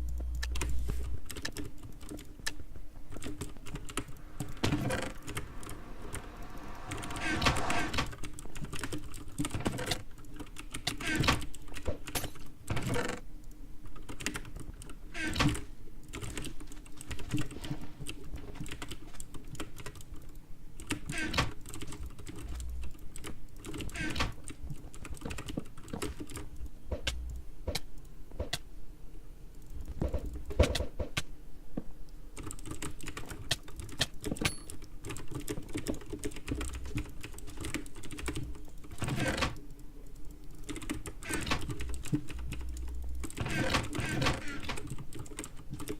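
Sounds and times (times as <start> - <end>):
computer keyboard typing: 0.5 - 5.4, 21.6 - 27.8, 32.4 - 44.0, 44.6 - 45.9.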